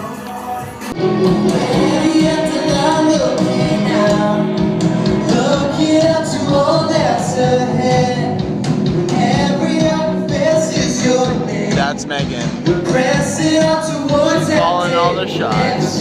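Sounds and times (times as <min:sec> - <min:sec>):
song with singing: 0:00.0 - 0:16.0.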